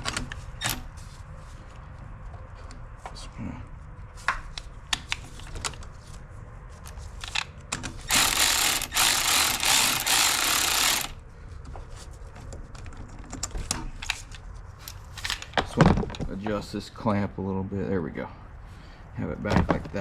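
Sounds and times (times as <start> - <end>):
power tool bursts: 8.1 - 11.2.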